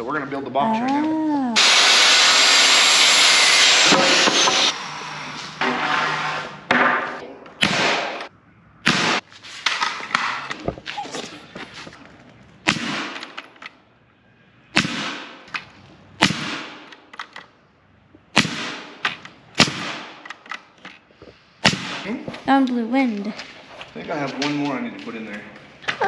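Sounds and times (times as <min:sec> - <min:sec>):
nail gun shots into wood: 0:07.6 - 0:09.2, 0:12.7 - 0:13.6, 0:14.8 - 0:15.6, 0:16.2 - 0:17.4, 0:18.3 - 0:20.6, 0:21.6 - 0:22.1.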